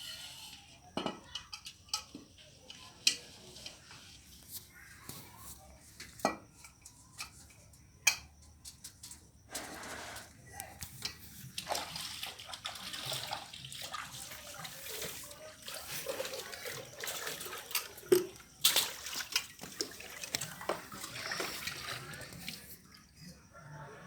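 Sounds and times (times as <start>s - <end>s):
water splashing and sloshing: 11.0s - 23.2s.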